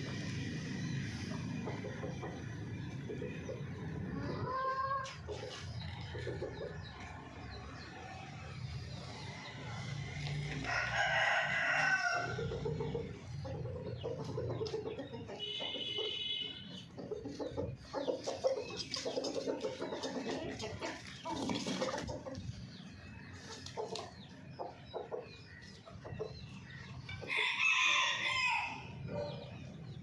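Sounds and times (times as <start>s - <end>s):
chickens clucking: 0.0s - 27.5s
high-pitched chicken call: 4.2s - 5.1s
rooster crowing: 10.7s - 12.4s, 27.3s - 28.9s.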